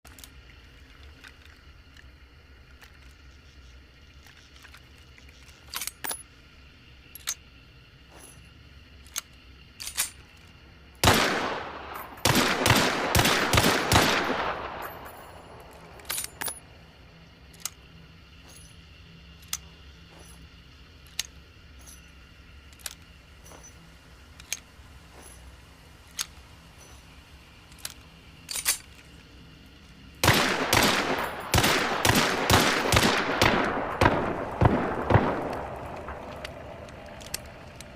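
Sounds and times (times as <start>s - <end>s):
rapid burst of shots: 11.0s - 14.8s, 30.2s - 36.8s
pistol gunfire: 11.0s - 15.4s, 30.2s - 36.8s.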